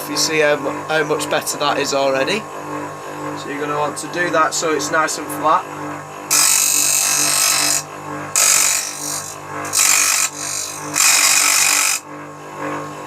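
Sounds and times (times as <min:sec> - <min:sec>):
grinder motor humming: 0:00.0 - 0:13.0
screwdriver grinding on wheel: 0:06.3 - 0:12.0.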